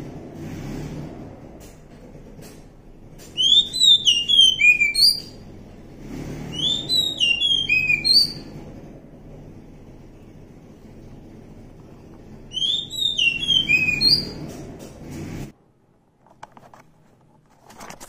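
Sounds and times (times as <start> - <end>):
bird singing whistled notes: 3.4 - 5.4, 6.5 - 8.6, 12.5 - 14.5
faint low background rumble: 5.1 - 17.6.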